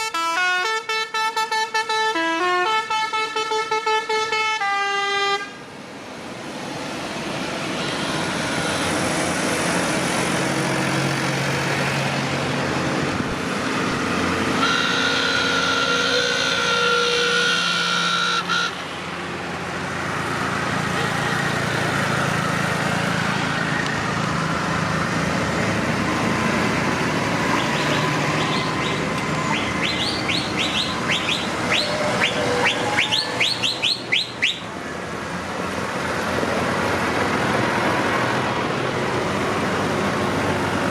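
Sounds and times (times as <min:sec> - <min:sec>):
horn sounding: 0:00.0 - 0:05.6, 0:14.5 - 0:18.9, 0:27.5 - 0:34.6
tractor engines driving past: 0:00.0 - 0:40.9.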